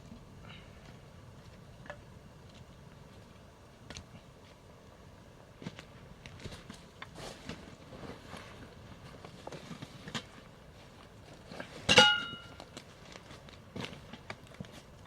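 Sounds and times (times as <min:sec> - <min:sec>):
metallic clang ringing: 0:11.9 - 0:12.6.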